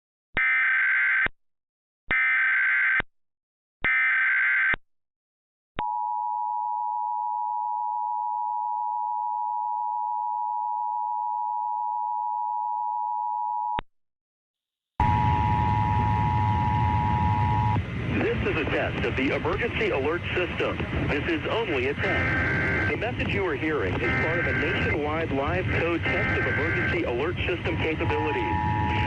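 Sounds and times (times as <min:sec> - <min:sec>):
two-tone attention signal: 0:15.0 - 0:17.8, 0:21.8 - 0:23.1, 0:24.0 - 0:29.0
buzzy digital data bursts: 0:21.1 - 0:29.0.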